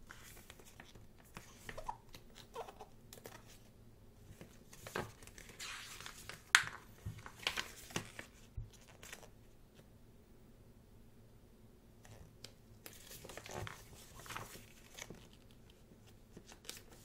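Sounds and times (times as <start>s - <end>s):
book pages rustling: 0.1s - 2.3s, 3.2s - 9.9s, 12.8s - 17.0s.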